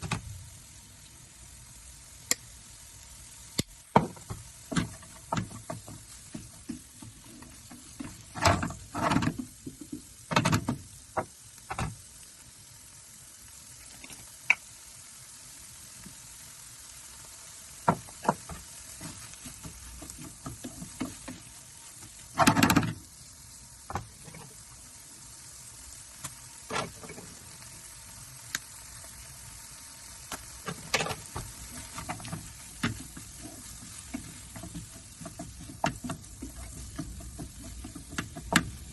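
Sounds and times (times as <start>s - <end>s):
food sizzling in a frying pan: 0.0s - 38.9s
utensil scraping a pan: 4.0s - 10.4s, 17.9s - 23.0s, 30.6s - 38.9s.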